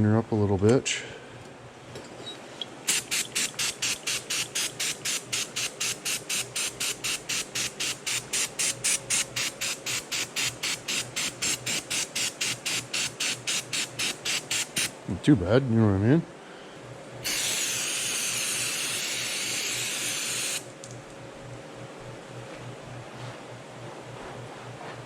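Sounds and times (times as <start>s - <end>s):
spray bottle squirting: 2.9s - 14.9s, 17.2s - 20.6s.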